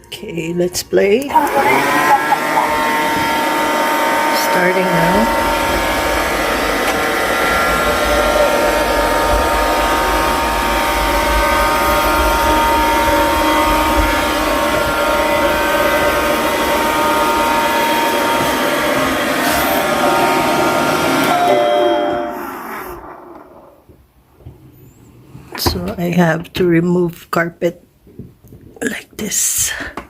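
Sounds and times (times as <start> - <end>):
robot vacuum cleaner whirring: 1.2 - 24.0.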